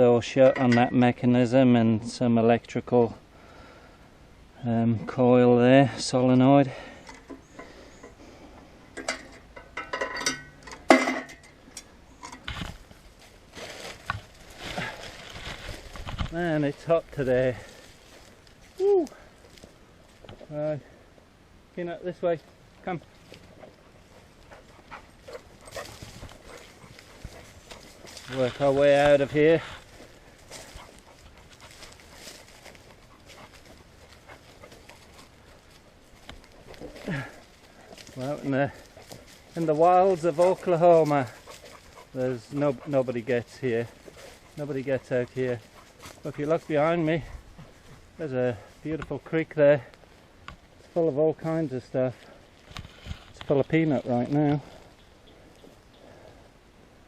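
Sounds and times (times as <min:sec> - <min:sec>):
faint footsteps: 0:06.7 - 0:21.4, 0:22.1 - 0:56.8
metallic clinks and rattles: 0:09.0 - 0:11.5
rustling: 0:10.4 - 0:21.0, 0:22.1 - 0:56.3.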